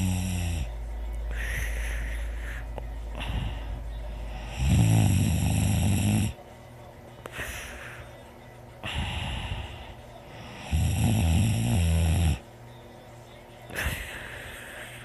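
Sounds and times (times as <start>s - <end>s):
loud low snore: 0.0s - 0.7s, 4.4s - 6.4s, 10.5s - 12.4s
breathy hiss of breathing: 1.3s - 6.4s, 7.2s - 10.9s, 13.7s - 15.0s.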